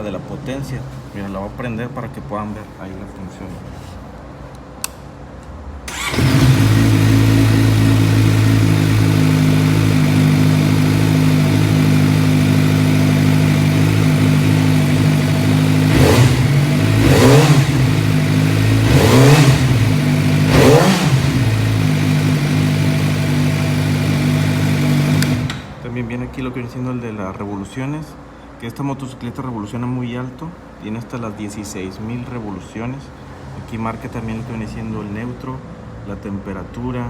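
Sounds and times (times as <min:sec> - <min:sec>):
motorcycle engine revving: 0:05.9 - 0:25.8
motorcycle engine starting and idling: 0:05.9 - 0:25.8.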